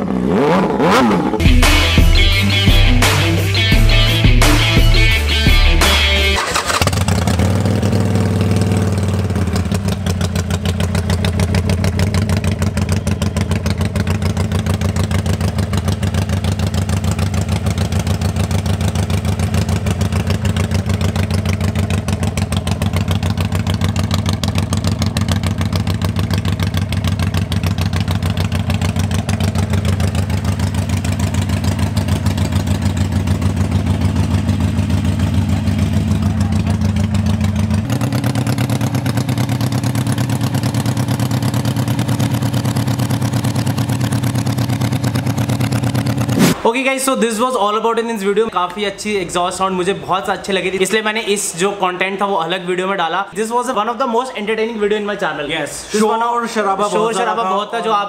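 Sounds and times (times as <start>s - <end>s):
motorbike engine idling: 3.6s - 46.3s.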